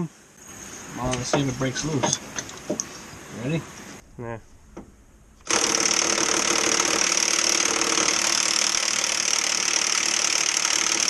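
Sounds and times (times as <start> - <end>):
impact wrench hammering: 4.8 - 11.0.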